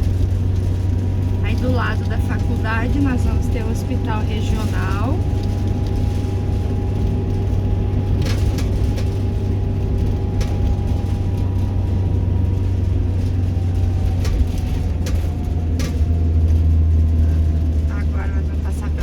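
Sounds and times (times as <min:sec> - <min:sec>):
car engine and road rumble: 0:00.0 - 0:19.0.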